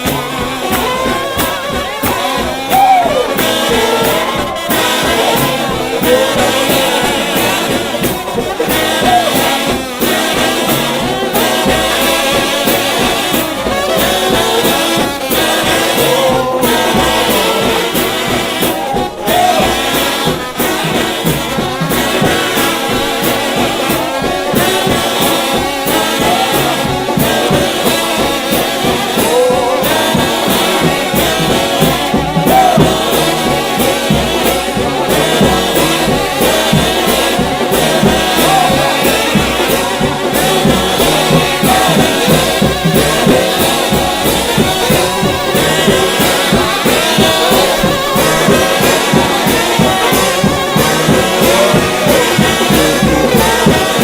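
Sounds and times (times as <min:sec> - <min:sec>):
percussion beat: 0:00.0 - 0:54.0
trombone band playing gospel music: 0:00.0 - 0:54.0.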